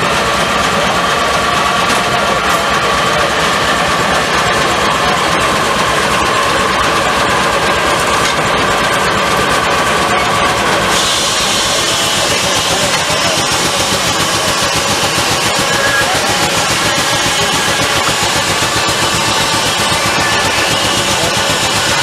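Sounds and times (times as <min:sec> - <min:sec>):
sawmill machinery running: 0:00.0 - 0:22.0
steady machine whine: 0:00.0 - 0:22.0
rapid clatter: 0:10.9 - 0:22.0.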